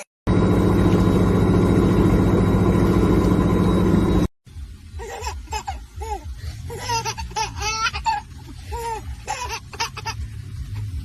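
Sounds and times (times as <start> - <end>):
loud motor drone: 0.3 - 4.3.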